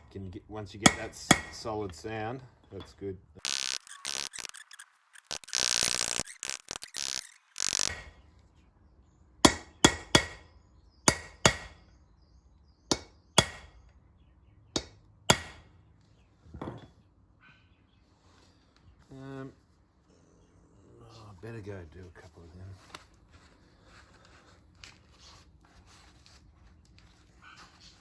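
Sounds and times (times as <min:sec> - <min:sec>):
hammer striking metal rivets: 0:00.8 - 0:01.7, 0:07.6 - 0:08.2, 0:09.4 - 0:11.8, 0:12.9 - 0:13.7, 0:14.8 - 0:15.7
short rasping noises: 0:03.4 - 0:08.0.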